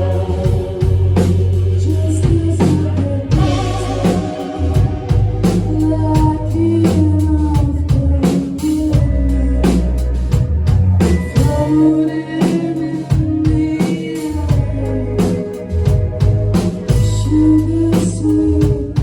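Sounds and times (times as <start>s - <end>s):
band playing live: 0.0s - 19.0s
drum kit hits: 3.3s - 6.6s.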